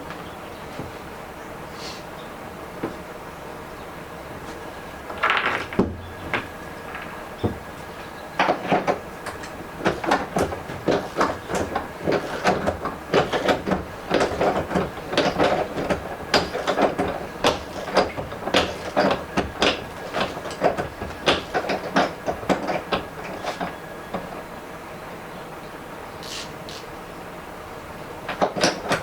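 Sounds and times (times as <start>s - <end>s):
sharp knocks and taps: 5.1s - 24.4s.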